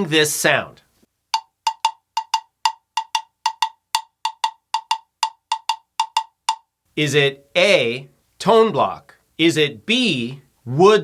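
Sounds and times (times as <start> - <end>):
wooden tone block knocks: 1.4 - 6.7.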